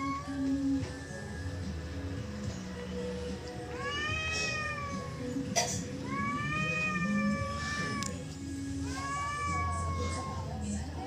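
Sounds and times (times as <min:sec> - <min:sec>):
cat yowling: 0:03.7 - 0:05.4, 0:06.0 - 0:08.2, 0:08.8 - 0:10.6.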